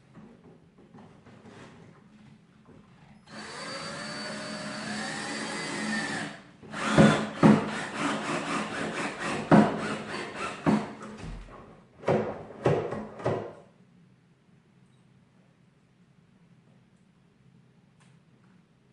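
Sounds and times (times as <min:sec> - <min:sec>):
drill motor running: 0:03.3 - 0:10.7.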